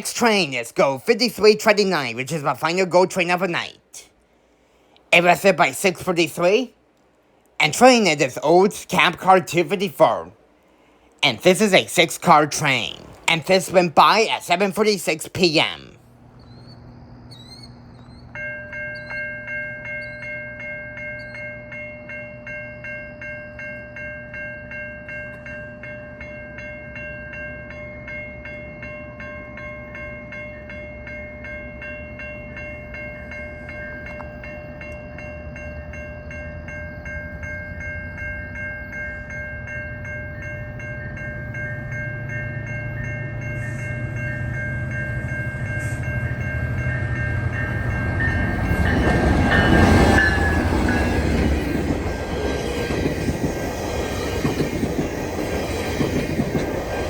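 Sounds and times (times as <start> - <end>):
level crossing warning bells: 0.0 - 4.1, 5.2 - 6.8, 7.6 - 10.6, 11.2 - 57.0
train rumble: 4.9 - 57.0.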